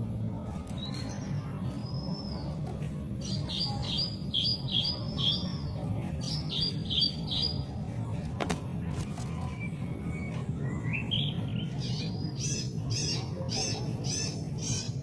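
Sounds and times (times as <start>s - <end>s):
steady low hum: 0.0s - 15.0s
bird singing whistled notes: 3.2s - 5.5s.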